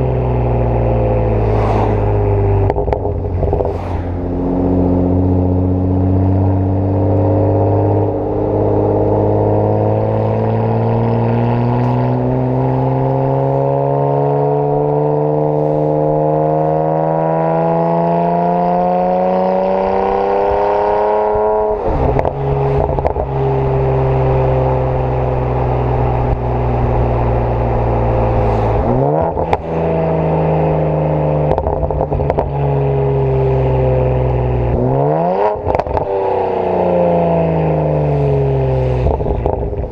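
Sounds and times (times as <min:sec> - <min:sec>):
exhaust crackles: 0:00.0 - 0:08.9, 0:09.5 - 0:13.7, 0:21.3 - 0:39.9
car engine revving: 0:00.0 - 0:39.9.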